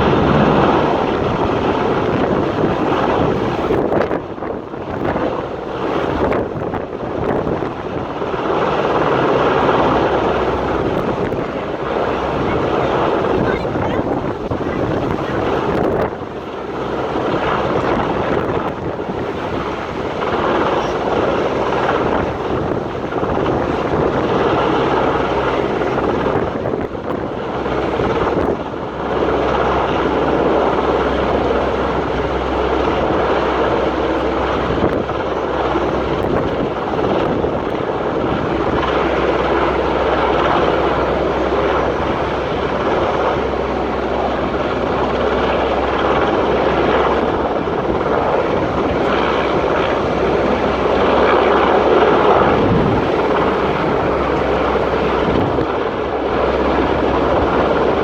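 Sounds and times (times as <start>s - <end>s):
helicopter rotor and engine: 0.0s - 58.0s.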